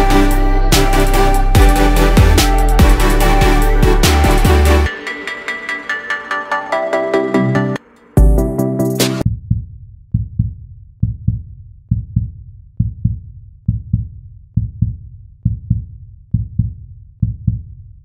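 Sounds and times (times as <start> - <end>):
heartbeat thumps: 1.6 - 4.6, 9.3 - 17.8.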